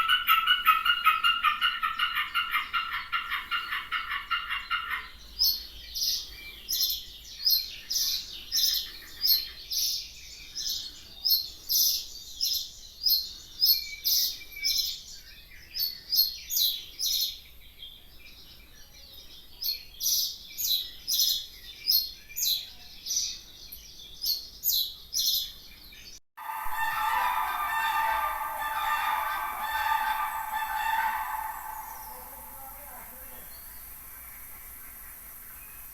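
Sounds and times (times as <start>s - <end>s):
small bird chirping: 4.5s - 26.2s.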